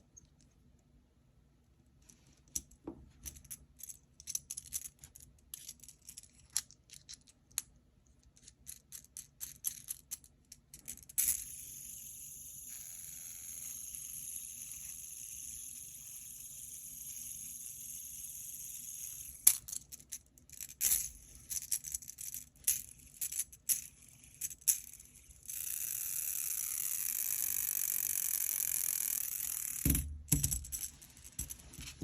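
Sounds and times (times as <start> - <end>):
fidget toy whirring: 11.2 - 30.0.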